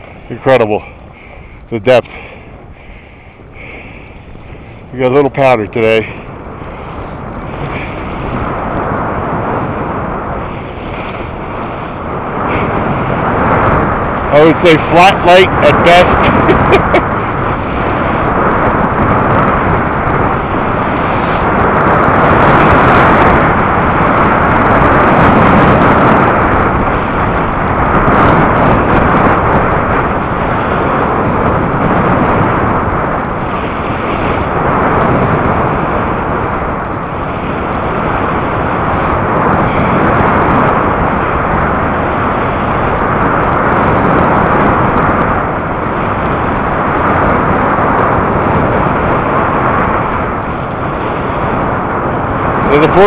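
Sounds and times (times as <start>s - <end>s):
wind rushing over microphone: 0.0s - 53.0s.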